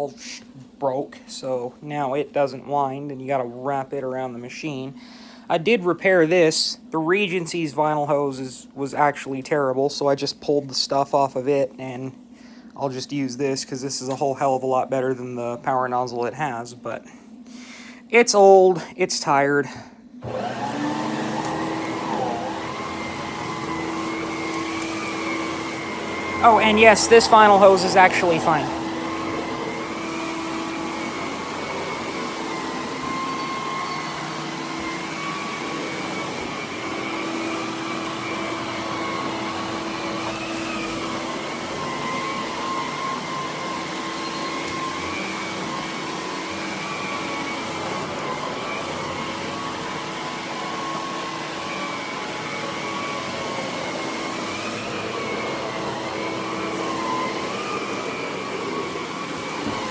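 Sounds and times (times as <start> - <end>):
vacuum cleaner running: 20.2 - 59.9.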